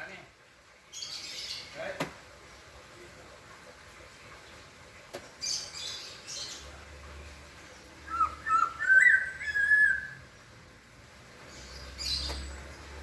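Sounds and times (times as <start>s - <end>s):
bird whistled notes: 8.1s - 10.2s.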